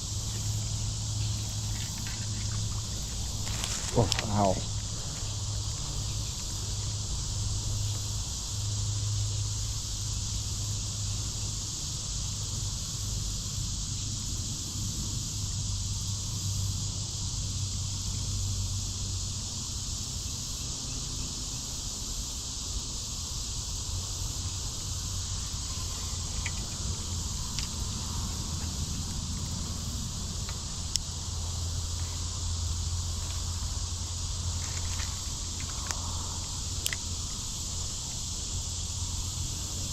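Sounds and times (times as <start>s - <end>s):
insects buzzing: 0.0s - 39.9s
faint ticks: 25.5s - 29.6s, 33.1s - 33.6s, 34.5s - 37.4s.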